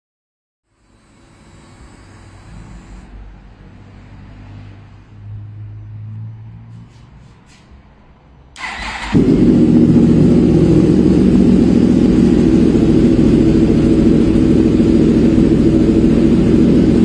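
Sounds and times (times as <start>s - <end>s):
motorcycle engine running at low revs: 8.9s - 17.0s.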